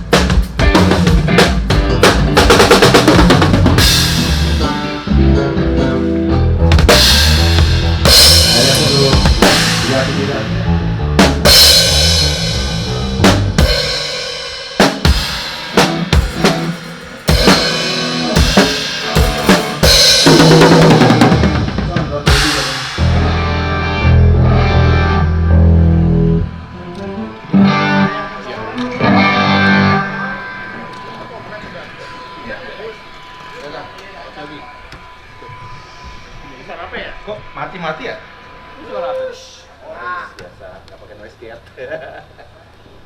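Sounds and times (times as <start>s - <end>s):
drum kit hits: 0.0s - 24.8s
low held instrument notes: 0.6s - 40.8s.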